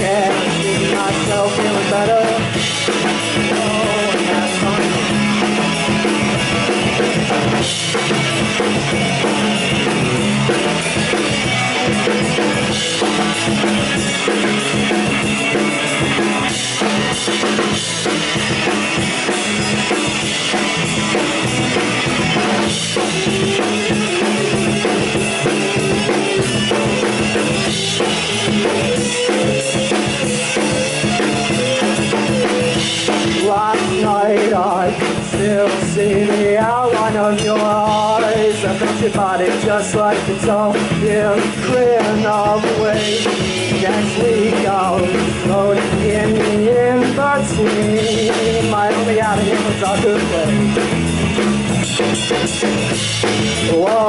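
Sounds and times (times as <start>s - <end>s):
electric bass: 0.0s - 54.0s
electric guitars: 0.0s - 54.0s.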